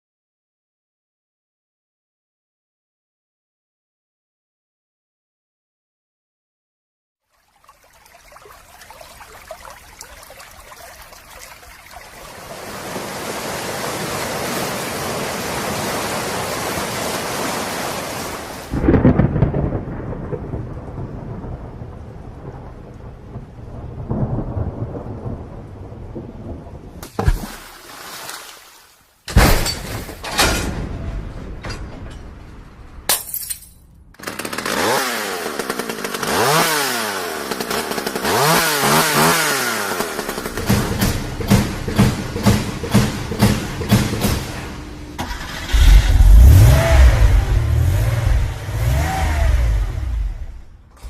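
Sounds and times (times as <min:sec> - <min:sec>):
rain: 0:07.2 - 0:29.3, 0:36.4 - 0:51.0
rolling thunder: 0:18.7 - 0:27.0, 0:30.6 - 0:33.1, 0:45.5 - 0:50.9
thunderclap: 0:18.7 - 0:27.0, 0:30.4 - 0:33.1, 0:40.4 - 0:51.0.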